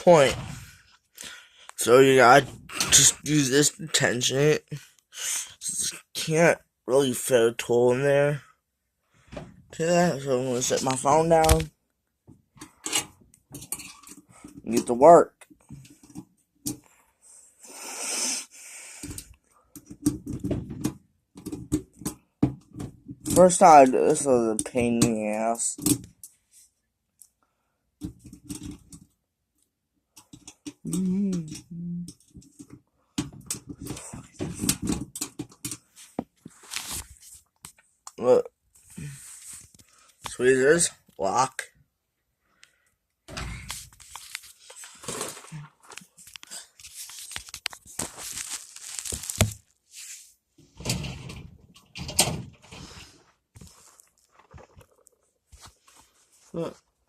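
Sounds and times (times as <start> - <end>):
person humming: 30.8 - 32.1
scraping and rustling at filing cabinet: 46.8 - 54.7.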